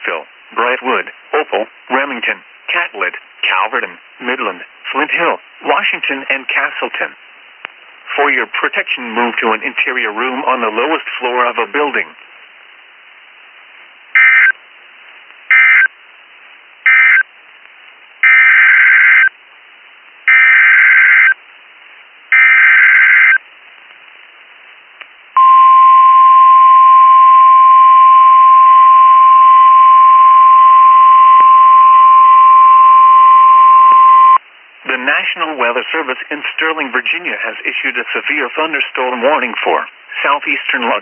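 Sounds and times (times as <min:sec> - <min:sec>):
steady alarm tone: 0:14.2 - 0:14.5, 0:20.3 - 0:21.4, 0:22.4 - 0:23.4
data bursts: 0:14.2 - 0:14.6.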